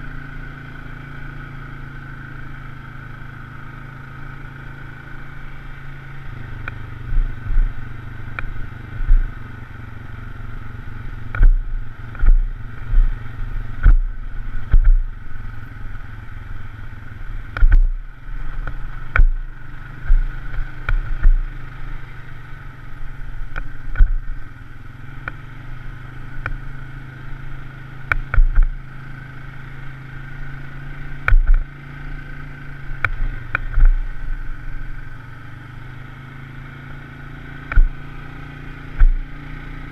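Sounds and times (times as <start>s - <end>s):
vehicle engine running: 0.0s - 39.9s
sharp knocks and low thuds: 6.6s - 9.5s, 11.2s - 15.5s, 17.5s - 21.6s, 23.5s - 24.4s, 28.1s - 28.8s, 31.2s - 31.7s, 33.0s - 34.2s, 37.6s - 38.1s, 38.9s - 39.5s.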